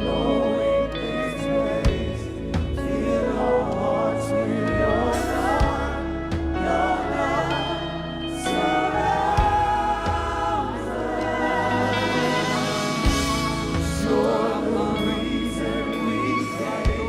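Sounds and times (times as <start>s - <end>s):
choir singing a slow praise song: 0.0s - 17.0s
instrumental accompaniment: 0.0s - 17.0s.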